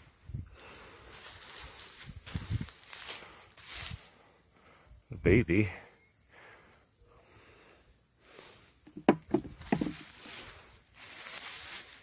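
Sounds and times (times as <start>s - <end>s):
hands rustling through hay and soil: 1.1s - 4.0s, 9.6s - 12.0s.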